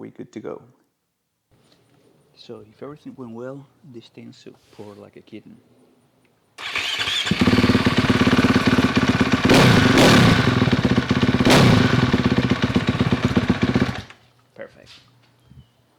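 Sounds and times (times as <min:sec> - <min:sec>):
electric starter cranking: 0:06.6 - 0:14.2
motorcycle engine revving: 0:06.6 - 0:14.2.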